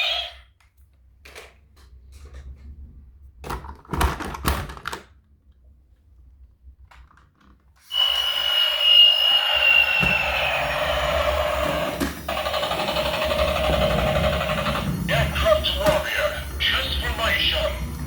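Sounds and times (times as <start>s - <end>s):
toy electric motor whine: 7.9s - 18.0s.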